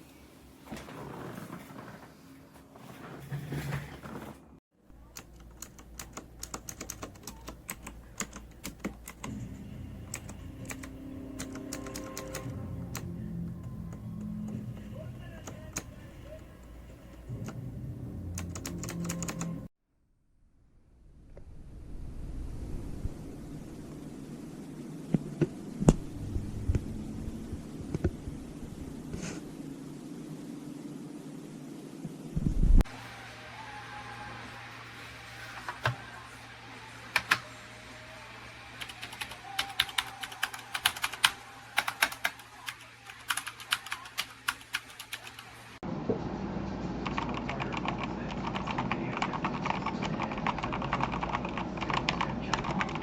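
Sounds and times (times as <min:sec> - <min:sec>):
mechanical keyboard typing: 0:05.1 - 0:09.4, 0:10.1 - 0:13.1, 0:18.4 - 0:19.6, 0:37.2 - 0:37.4, 0:38.8 - 0:45.5, 0:47.1 - 0:53.0
steady low hum: 0:20.5 - 0:39.1.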